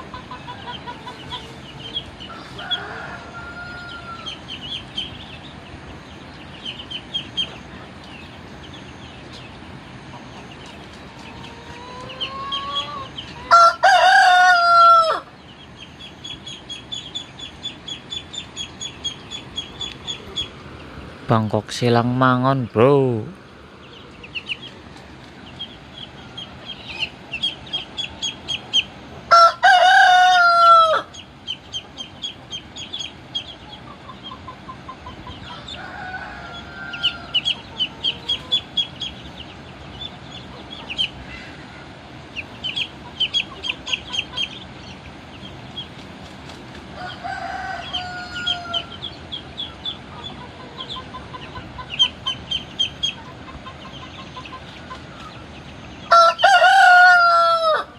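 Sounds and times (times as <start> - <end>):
roosters crowing: 0.0 - 24.7, 25.4 - 45.4, 46.8 - 57.9
rapid high-pitched chirping: 15.4 - 20.9, 25.5 - 29.0, 42.3 - 46.0, 48.8 - 56.1.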